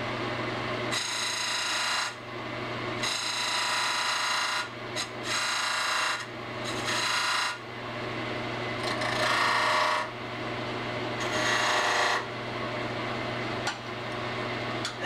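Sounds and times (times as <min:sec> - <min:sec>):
turning tool cutting wood: 0:00.9 - 0:02.2, 0:03.0 - 0:07.6, 0:08.8 - 0:10.1, 0:11.2 - 0:12.2
wood lathe humming: 0:00.9 - 0:02.2, 0:03.0 - 0:04.7, 0:05.3 - 0:06.2, 0:06.8 - 0:07.6, 0:08.9 - 0:10.1, 0:11.2 - 0:12.2.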